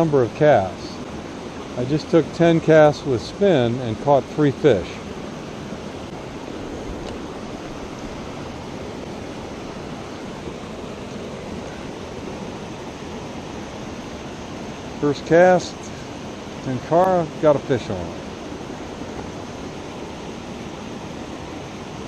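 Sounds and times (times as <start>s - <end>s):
stream running over rocks: 0.0s - 22.0s.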